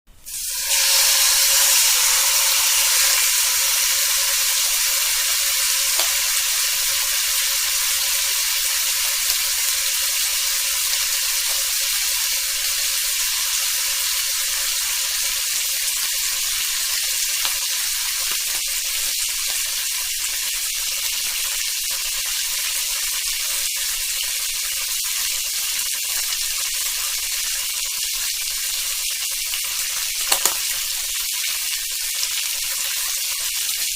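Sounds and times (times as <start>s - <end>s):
meat sizzling on a grill: 0.2s - 33.9s
fat popping and crackling: 30.1s - 30.9s.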